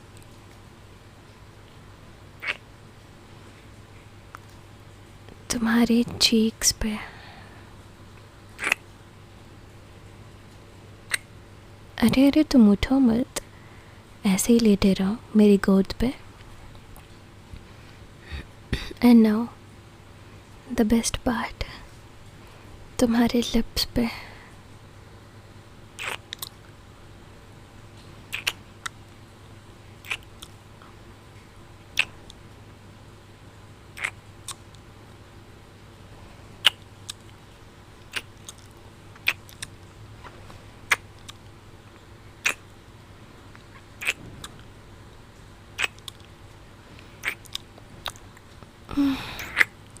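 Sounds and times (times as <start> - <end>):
kissing lip smacks: 2.4 - 2.6, 8.6 - 8.8, 11.1 - 11.3, 26.0 - 26.6, 28.3 - 29.0, 30.0 - 30.6, 32.0 - 32.4, 34.0 - 34.7, 36.6 - 37.4, 38.0 - 39.8, 40.9 - 41.5, 42.4 - 42.7, 43.6 - 44.7, 45.8 - 46.3, 47.2 - 48.2, 49.4 - 49.8
breathy kiss: 8.6 - 8.8, 26.0 - 26.2, 28.3 - 28.6, 30.0 - 30.3, 42.4 - 42.6, 45.8 - 46.1, 47.2 - 47.5, 48.9 - 49.7.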